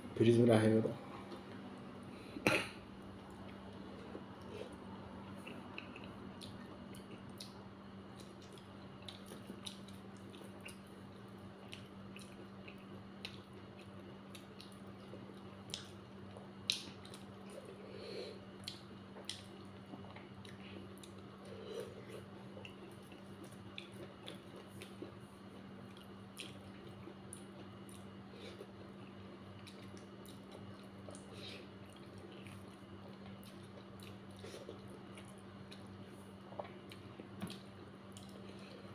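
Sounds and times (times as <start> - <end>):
steady low hum: 0.0 - 38.9
person chewing with wet mouth clicks: 5.3 - 10.9, 11.6 - 17.7, 18.6 - 25.2, 25.8 - 28.8, 29.5 - 38.7.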